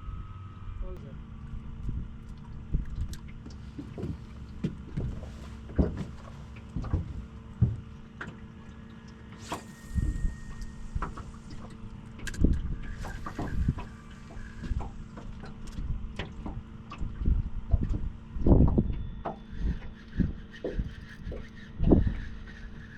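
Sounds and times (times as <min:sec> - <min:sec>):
low steady hum: 0:00.0 - 0:22.9
wind buffeting microphone: 0:17.0 - 0:19.0, 0:19.6 - 0:22.4.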